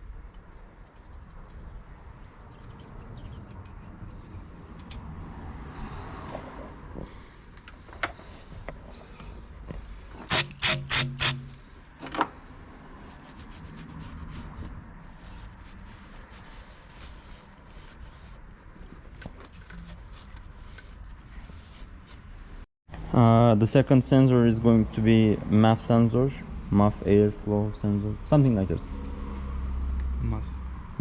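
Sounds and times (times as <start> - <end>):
rubbing and scraping on engine parts: 0.4 - 5.1, 12.4 - 22.6.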